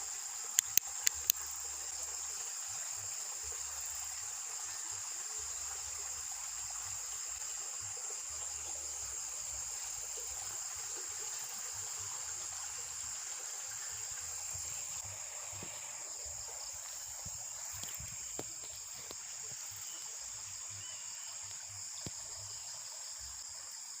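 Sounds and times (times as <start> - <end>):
soft hiss: 0.0 - 23.7
insects chirping: 0.0 - 24.0
faint clicks: 0.5 - 1.4.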